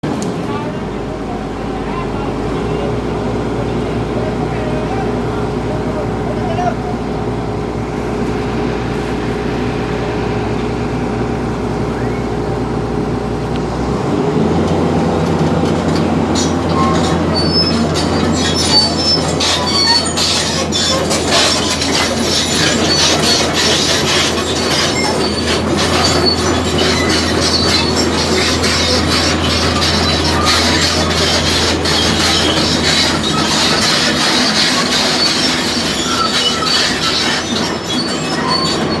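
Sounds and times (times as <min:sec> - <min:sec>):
diesel engine running: 0:00.0 - 0:39.0
steel tracks clanking and squealing: 0:13.8 - 0:39.0.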